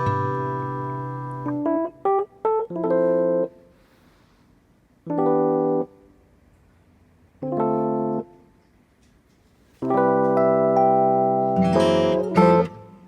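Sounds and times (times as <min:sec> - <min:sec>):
electric piano music: 0:00.0 - 0:03.8, 0:05.0 - 0:06.4, 0:07.4 - 0:08.6, 0:09.8 - 0:13.0.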